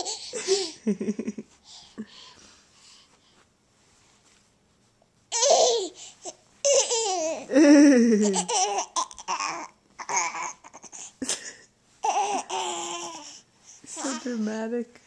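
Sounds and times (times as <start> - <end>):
baby laughing: 0.0 - 0.8, 5.3 - 7.5, 8.2 - 11.1, 12.0 - 13.3.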